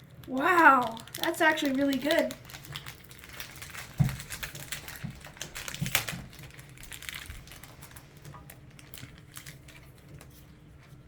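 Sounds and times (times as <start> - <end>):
foil wrapper crinkling: 0.0 - 11.0.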